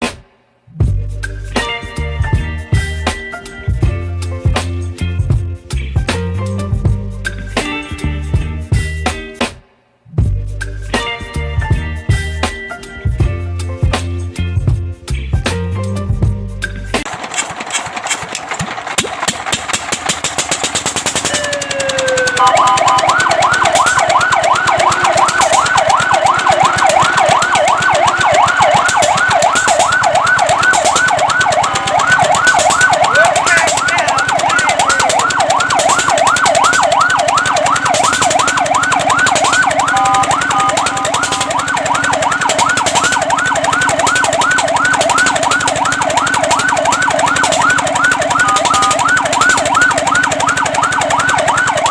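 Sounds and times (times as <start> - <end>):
fast rhythmic clatter: 17.0 - 51.9
fire truck siren yelping: 17.0 - 51.9.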